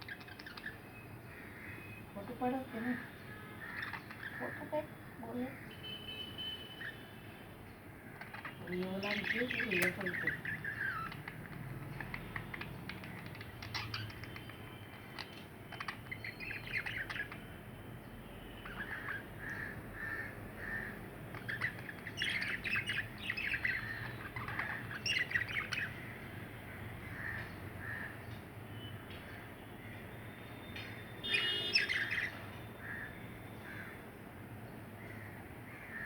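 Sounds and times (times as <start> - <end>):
budgerigars chirping and warbling: 0.0 - 3.0, 3.6 - 4.8, 8.1 - 17.5, 18.6 - 26.2, 31.2 - 33.0.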